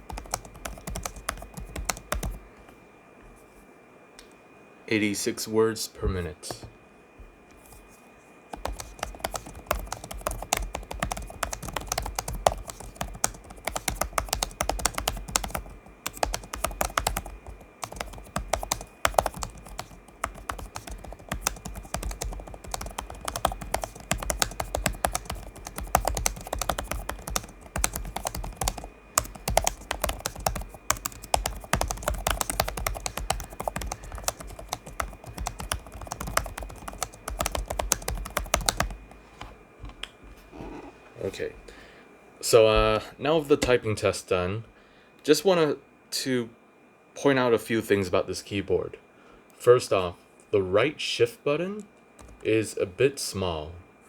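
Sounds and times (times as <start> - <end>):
fast typing on laptop keyboard: 0.0 - 2.4, 6.5 - 6.7, 8.5 - 39.2, 52.2 - 52.5.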